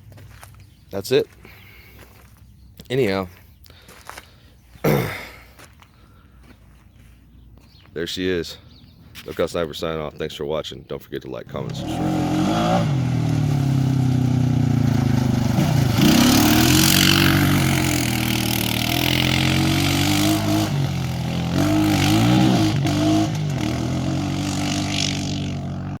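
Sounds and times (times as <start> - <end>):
engine running under throttle: 11.6 - 26.0.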